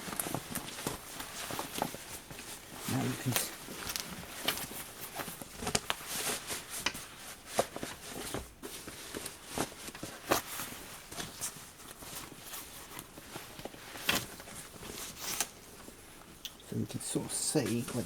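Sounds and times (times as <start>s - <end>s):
fabric rustling: 0.0s - 16.4s.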